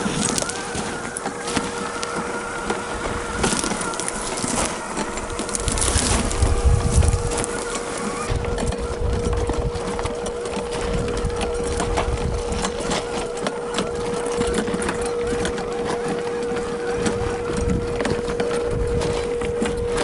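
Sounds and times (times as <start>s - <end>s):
electric motor whining: 0.0s - 20.0s
tyres crunching over loose ground: 0.0s - 20.0s.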